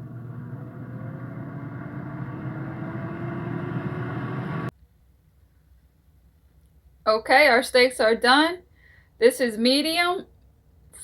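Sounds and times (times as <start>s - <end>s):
air fryer fan humming: 0.0s - 4.7s
faint rising tone: 0.0s - 4.7s.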